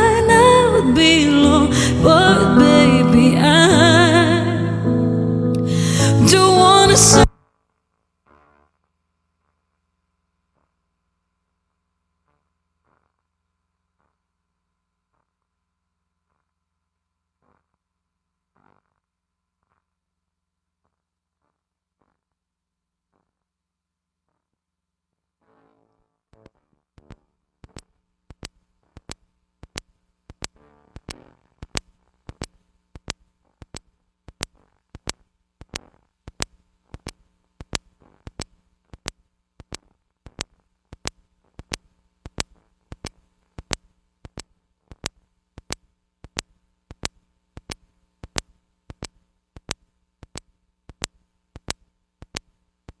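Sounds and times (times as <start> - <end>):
faint held notes: 0.0 - 7.3.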